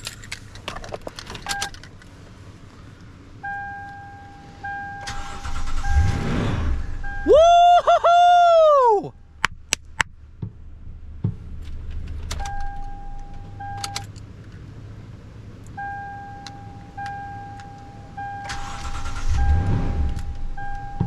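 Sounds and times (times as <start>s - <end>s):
electronic warning chime: 3.4s - 6.2s, 20.5s - 21.0s
truck engine running: 9.2s - 21.0s
rush of noise: 19.2s - 20.6s.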